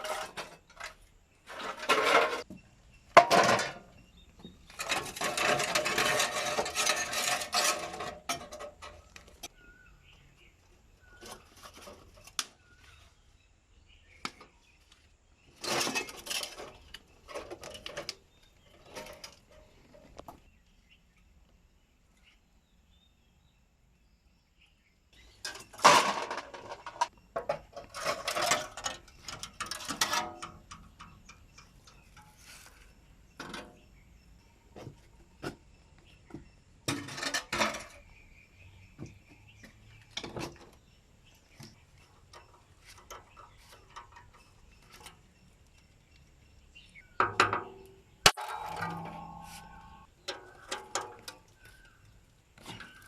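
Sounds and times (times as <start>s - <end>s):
metal tools clinking and clattering: 4.7s - 9.2s, 25.4s - 32.3s.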